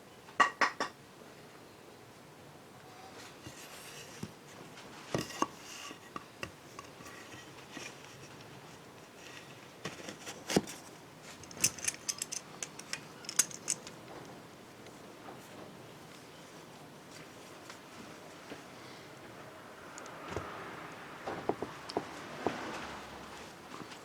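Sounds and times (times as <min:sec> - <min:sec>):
metal tools clinking and knocking: 0:11.3 - 0:14.0.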